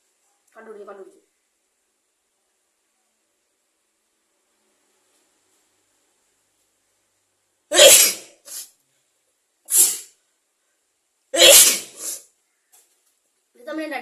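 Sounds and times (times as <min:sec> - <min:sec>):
person sneezing: 0:07.7 - 0:08.8, 0:09.7 - 0:10.2, 0:11.4 - 0:12.3.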